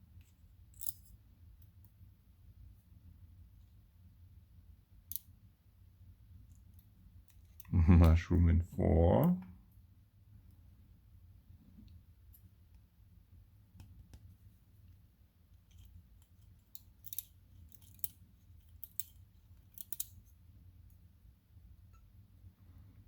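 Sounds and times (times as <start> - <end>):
tweezers clicking on lock pins: 15.7 - 20.2.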